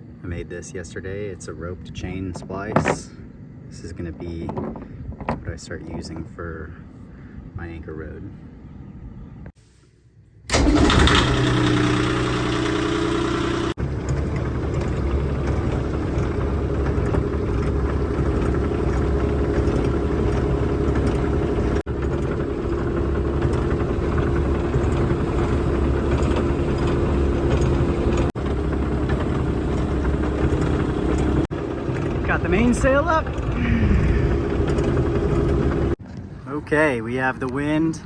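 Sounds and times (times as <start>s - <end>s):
boat motor running: 10.5s - 36.0s.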